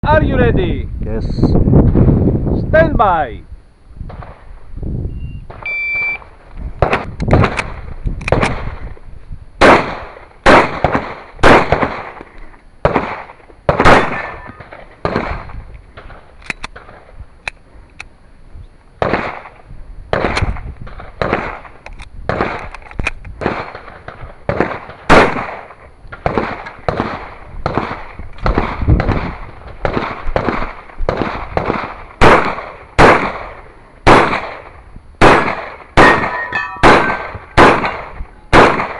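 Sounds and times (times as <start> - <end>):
shot timer beep: 5.1 - 6.2
pistol fire: 6.8 - 8.8, 9.6 - 12.2, 12.8 - 17.0, 19.0 - 22.7, 23.4 - 38.9.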